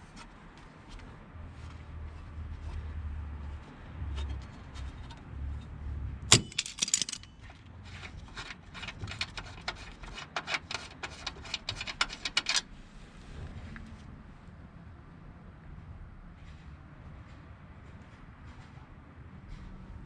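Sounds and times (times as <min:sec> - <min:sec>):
sharp metallic clank: 0:06.3 - 0:07.5
metal clicking and clinking: 0:06.3 - 0:12.7.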